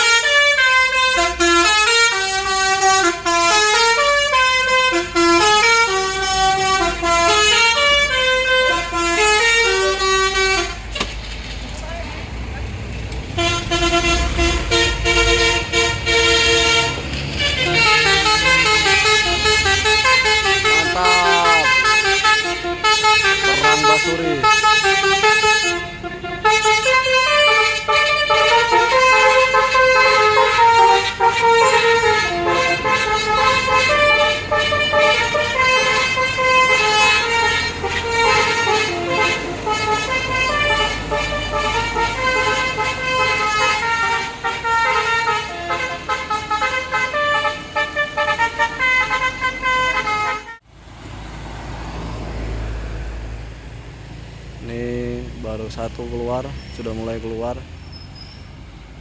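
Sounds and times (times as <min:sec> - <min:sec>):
bus musical horn melody: 0:00.0 - 0:11.2, 0:13.2 - 0:50.7
low engine rumble: 0:04.8 - 0:26.5.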